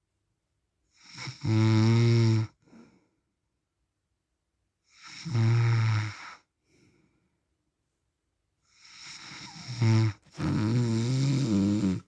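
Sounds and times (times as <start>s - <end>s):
man snoring: 1.1s - 2.5s, 5.0s - 6.3s, 8.8s - 12.0s.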